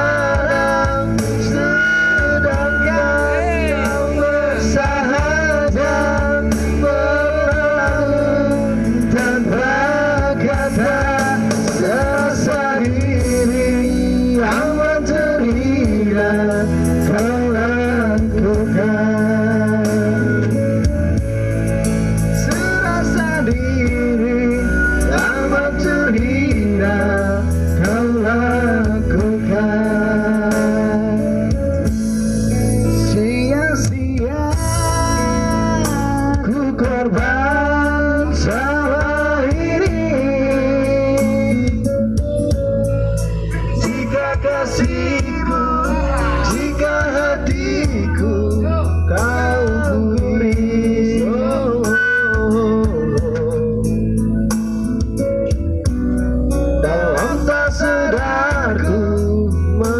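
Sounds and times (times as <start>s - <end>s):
person singing with vibrato: 0.0s - 20.5s, 32.7s - 59.9s
guitar backing: 0.0s - 59.9s.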